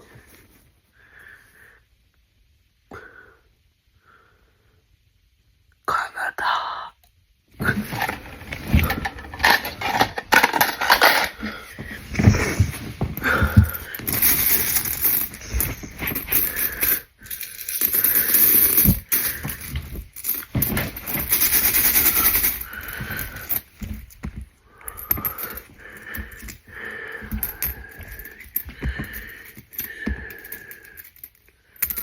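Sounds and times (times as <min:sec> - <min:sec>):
coins scraping and clinking: 0:07.7 - 0:32.0.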